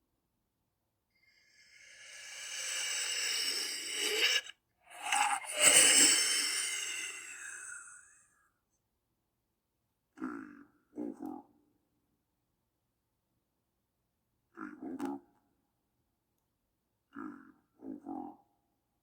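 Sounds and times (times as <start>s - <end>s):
raspy hissing breath: 1.4s - 8.0s.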